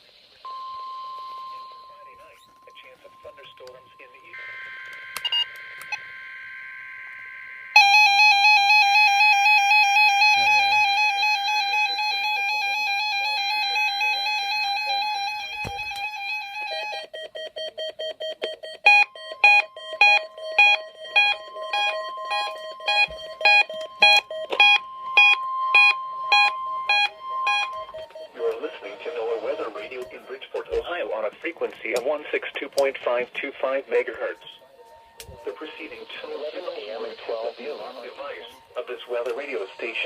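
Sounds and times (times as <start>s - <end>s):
steady electronic tone: 0.5s - 16.8s, 19.0s - 30.6s, 35.4s - 40.0s
rapid electronic beeping: 1.4s - 10.9s, 16.6s - 32.4s, 35.4s - 40.0s
screechy two-tone data bursts: 18.8s - 30.4s, 35.4s - 40.0s
warbling electronic alert tone: 18.9s - 30.4s.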